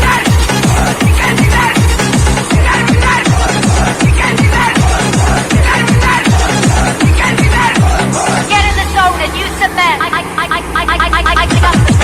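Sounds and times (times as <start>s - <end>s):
deep kick drums: 0.0s - 8.9s, 11.5s - 12.0s
electronic dance music: 0.0s - 12.0s.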